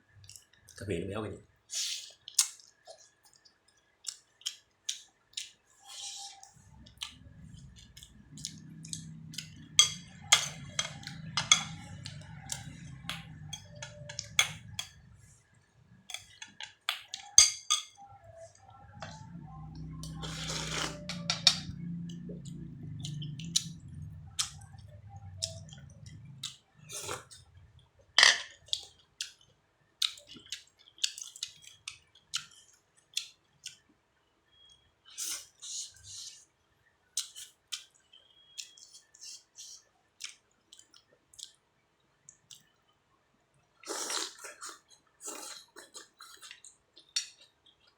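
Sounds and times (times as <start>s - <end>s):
chewing: 1.8s - 15.0s, 19.0s - 27.5s, 28.6s - 33.9s, 37.2s - 41.6s, 43.8s - 47.9s
low hum: 6.6s - 16.1s, 18.1s - 27.8s
chopsticks tapping bowls: 7.8s - 15.0s, 16.1s - 18.0s.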